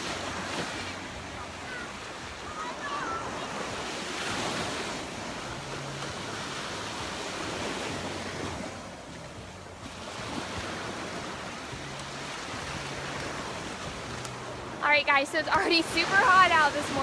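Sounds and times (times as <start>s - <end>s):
surf breaking on beach: 0.0s - 17.0s.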